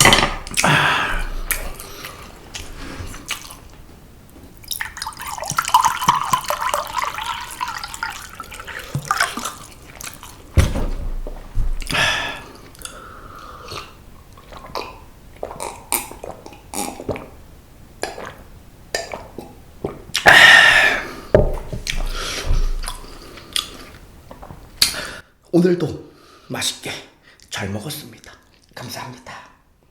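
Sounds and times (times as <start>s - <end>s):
breathy burst: 0.6s - 2.1s
wet chewing and lip smacks: 1.5s - 3.8s.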